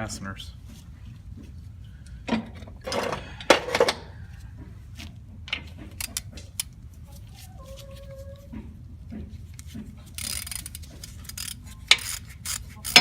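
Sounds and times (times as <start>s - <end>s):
hand ratchet clicking: 9.6s - 13.0s.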